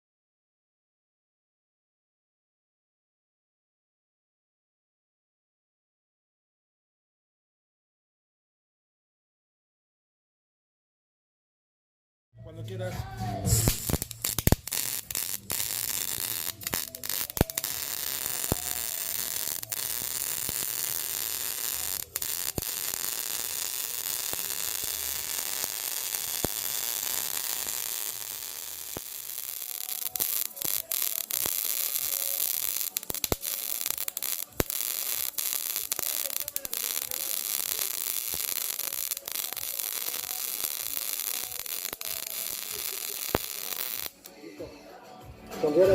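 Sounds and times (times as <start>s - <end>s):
arc welding crackling hiss: 13.5s - 44.4s.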